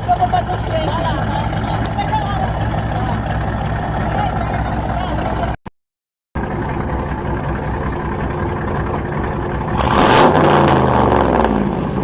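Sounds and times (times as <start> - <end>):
car engine revving: 9.6 - 12.0.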